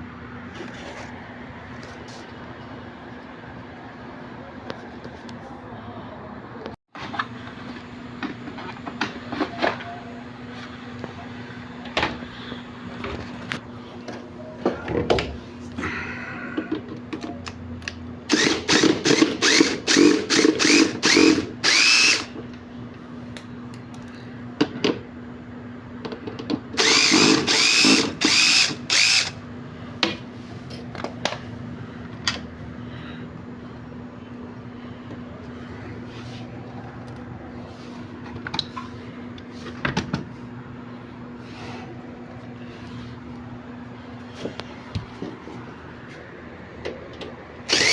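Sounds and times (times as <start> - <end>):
power drill whining: 18.3 - 22.3, 26.8 - 29.4, 47.7 - 47.9.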